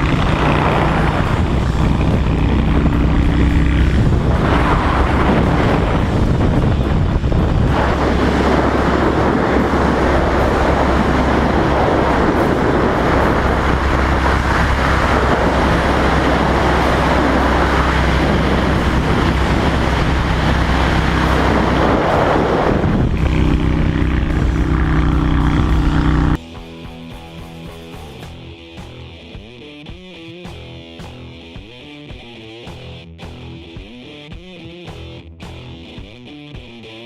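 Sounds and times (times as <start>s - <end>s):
wind and road noise: 0.0s - 26.4s, 27.2s - 36.6s
motorcycle engine with loud exhaust: 0.0s - 36.8s.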